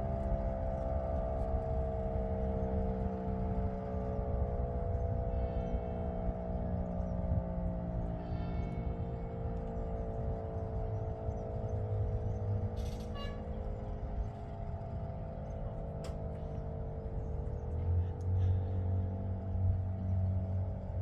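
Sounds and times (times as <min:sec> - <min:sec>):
warning siren steady low tone: 0:00.0 - 0:21.0
road traffic rumble: 0:00.1 - 0:21.0.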